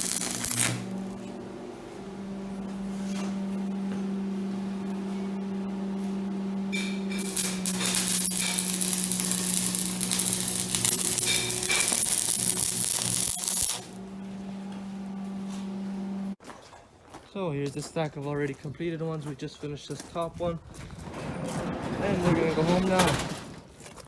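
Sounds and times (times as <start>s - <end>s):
welding arc crackling: 0.0s - 1.3s, 6.8s - 14.1s
electric welder humming: 0.0s - 16.4s.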